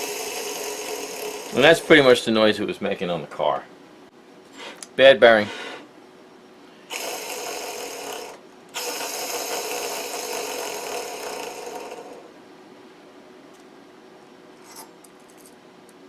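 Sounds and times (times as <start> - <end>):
wheel bearing spinning whir: 0.0 - 2.1, 6.8 - 12.3.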